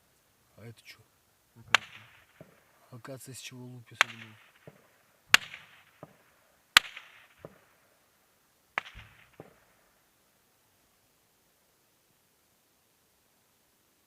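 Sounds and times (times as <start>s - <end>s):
fainter dull report: 0.3s - 12.1s
gunshot cracks: 1.7s - 2.6s, 4.0s - 6.2s, 6.8s - 7.7s, 8.8s - 9.7s.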